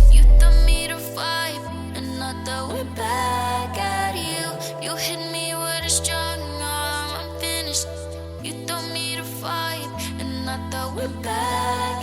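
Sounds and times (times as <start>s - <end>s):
instrumental music with bass: 0.0s - 0.8s.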